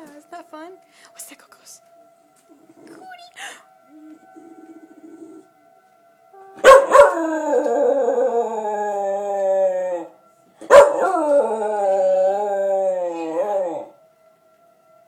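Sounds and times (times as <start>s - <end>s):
tornado siren: 0.0s - 15.0s
dog howling: 3.9s - 5.5s, 6.6s - 14.0s.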